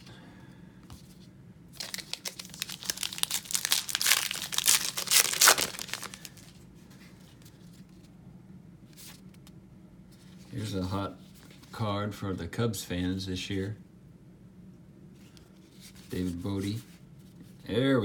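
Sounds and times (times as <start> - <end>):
plastic wrapper crackling: 1.8 - 6.6.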